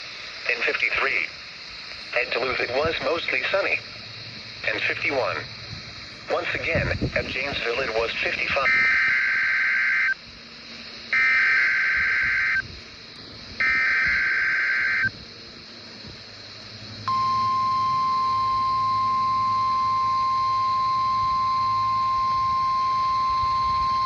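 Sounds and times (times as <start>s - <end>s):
steady warning alarm tone: 8.6s - 10.2s, 10.8s - 12.7s, 13.6s - 15.2s, 17.0s - 24.0s
buzzy digital header bursts: 11.1s - 12.6s, 13.6s - 15.1s.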